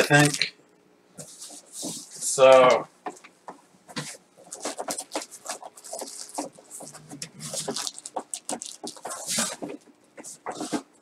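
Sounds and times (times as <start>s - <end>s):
packaging crinkling and rustling: 0.0s - 0.5s, 4.4s - 10.9s.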